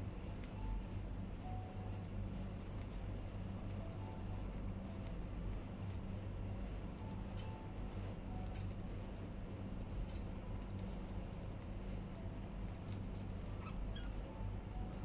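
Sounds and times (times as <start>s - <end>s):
steady low hum: 0.0s - 15.0s
birds nibbling lettuce: 10.1s - 14.1s.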